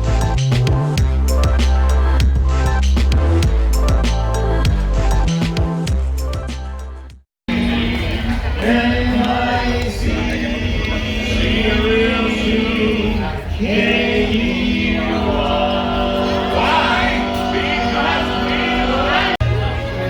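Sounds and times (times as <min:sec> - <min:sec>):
choir singing long notes: 0:07.5 - 0:20.0.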